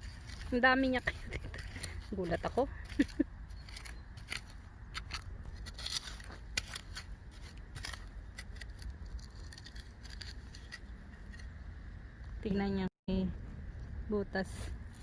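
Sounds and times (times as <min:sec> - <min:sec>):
hands handling potatoes and soil: 0:00.0 - 0:11.6.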